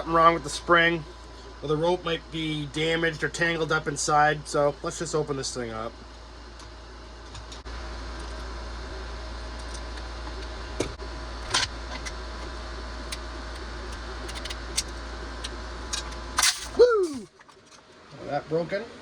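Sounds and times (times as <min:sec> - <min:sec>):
steady background hum: 0:00.0 - 0:19.0
tools and parts clinking: 0:11.4 - 0:12.5, 0:13.1 - 0:15.0, 0:15.9 - 0:17.9.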